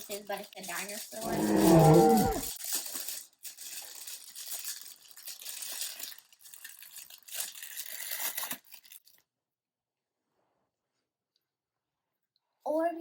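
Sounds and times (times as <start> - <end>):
plastic packaging crinkling and tearing: 0.0 - 9.3.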